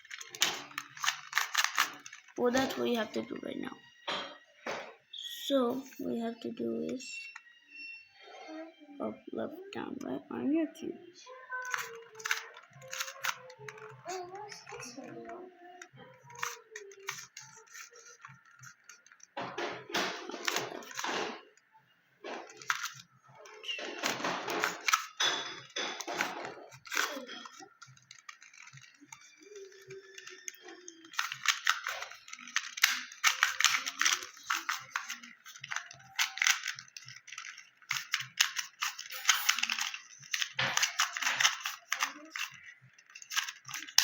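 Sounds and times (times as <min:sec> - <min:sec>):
puzzle cube clicking as turned: 0:00.0 - 0:03.3, 0:11.6 - 0:15.2, 0:16.3 - 0:19.4, 0:20.0 - 0:21.4, 0:22.5 - 0:44.0.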